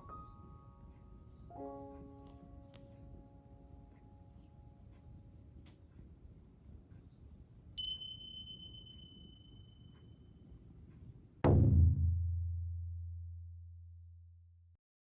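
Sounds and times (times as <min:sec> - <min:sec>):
bright chime ding: 0:07.8 - 0:10.0
deep hit with low boom: 0:11.4 - 0:12.8.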